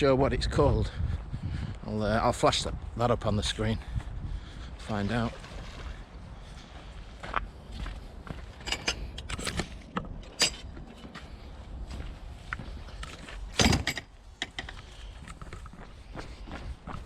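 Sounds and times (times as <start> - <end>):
runner's footsteps: 14.6 - 17.0.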